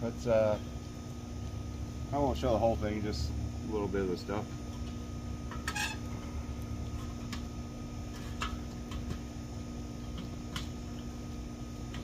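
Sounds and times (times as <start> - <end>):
steady background hum: 0.0 - 12.0
grill parts clicking and tapping: 8.1 - 9.3.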